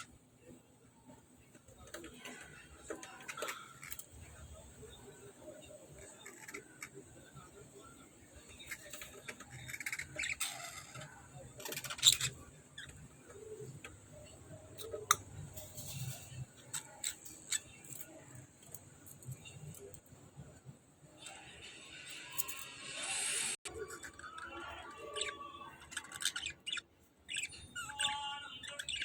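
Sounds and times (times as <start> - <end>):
birds chirping and squawking: 8.3 - 20.0, 23.7 - 29.0.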